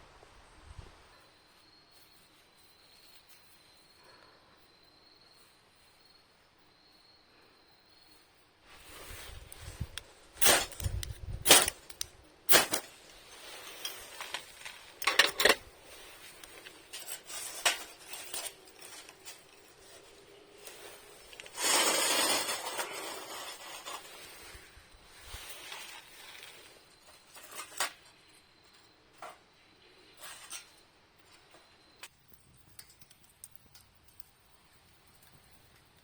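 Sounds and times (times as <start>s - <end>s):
noisy rustle: 8.6s - 28.2s
cookware clinking and knocking: 15.0s - 15.6s.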